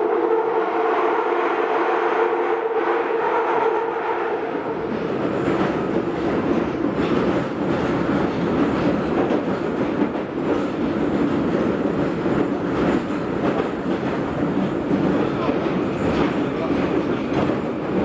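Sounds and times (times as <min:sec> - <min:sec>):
train rumbling through tunnel: 0:00.0 - 0:18.0.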